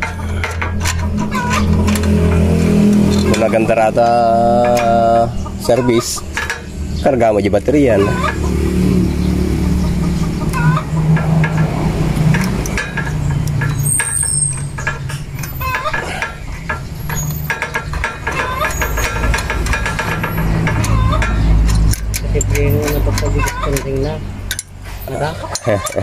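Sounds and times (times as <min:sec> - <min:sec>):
metallic tool clicks: 0:10.4 - 0:24.8.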